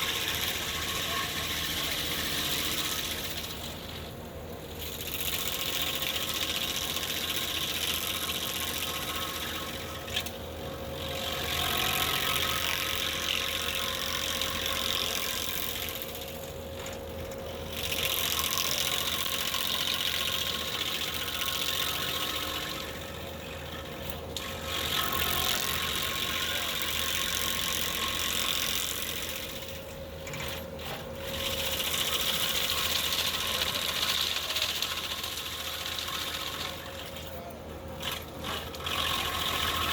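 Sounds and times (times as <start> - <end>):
stump grinder wheel grinding: 0.0 - 4.1, 4.7 - 39.9
machine engine running: 0.0 - 39.9.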